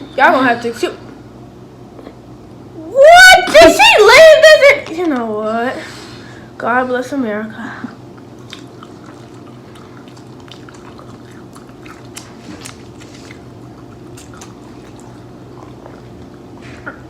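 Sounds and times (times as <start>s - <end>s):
low steady hum: 0.0s - 17.0s
person chewing food: 8.1s - 17.0s
wet mouth clicks and smacks: 8.4s - 9.0s, 10.1s - 15.1s.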